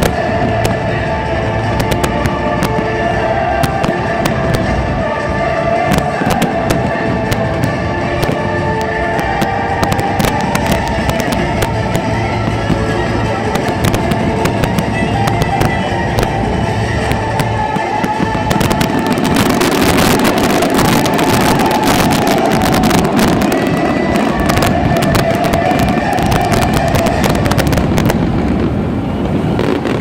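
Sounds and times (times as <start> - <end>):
fireworks bangs and crackles: 0.0 - 30.0
music playing: 0.0 - 30.0.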